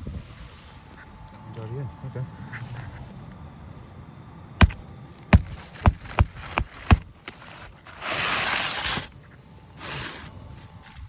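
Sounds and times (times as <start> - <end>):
knocks on a roof: 4.6 - 7.2.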